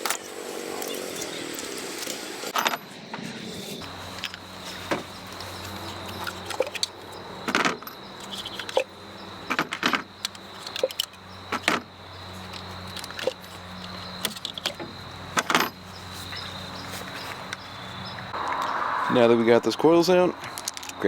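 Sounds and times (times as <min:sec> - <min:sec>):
clicks and knocks of handling parts: 0:04.2 - 0:16.4, 0:20.4 - 0:21.0.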